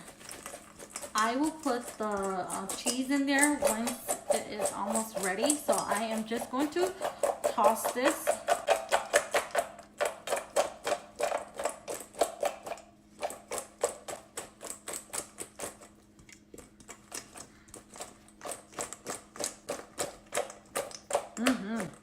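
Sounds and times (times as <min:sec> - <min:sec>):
utensils knocking against bowl: 0:00.0 - 0:12.8.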